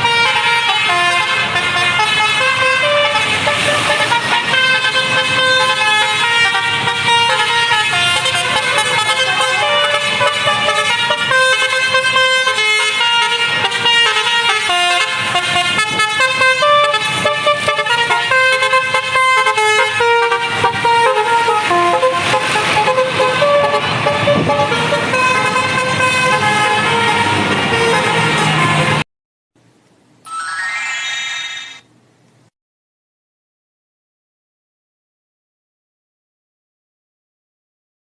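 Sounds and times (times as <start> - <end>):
bus melody horn: 0.0 - 29.0.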